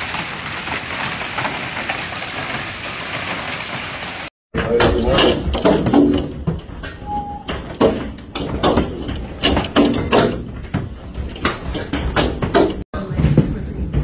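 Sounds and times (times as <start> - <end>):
loud knocks and bangs: 7.6 - 14.0.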